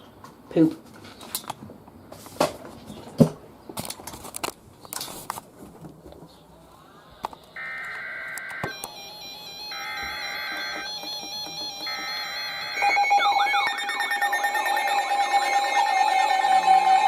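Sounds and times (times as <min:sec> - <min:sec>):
harsh digital data burst: 0:07.6 - 0:17.0
scattered clicks and knocks: 0:09.9 - 0:15.4.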